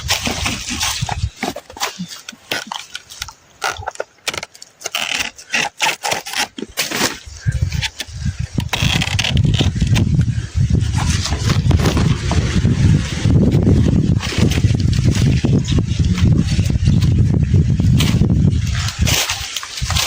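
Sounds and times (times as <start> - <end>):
wind buffeting microphone: 0.0 - 1.9, 7.2 - 20.0
crackling scraping clicks: 0.0 - 12.4.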